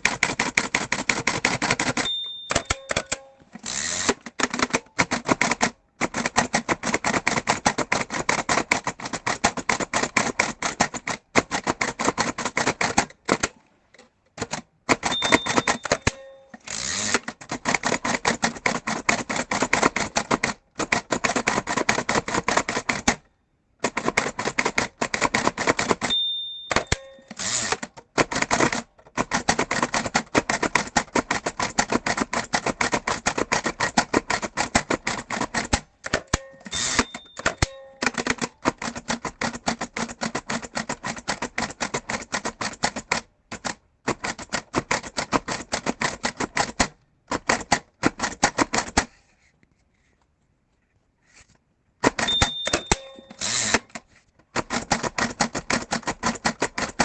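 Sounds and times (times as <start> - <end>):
braille writer keys clacking: 0.0 - 13.5, 14.4 - 23.2, 23.9 - 49.0, 52.1 - 57.0
ringing bell tone: 2.0 - 3.4, 15.1 - 16.5, 26.1 - 27.3, 36.5 - 38.0, 52.3 - 53.4.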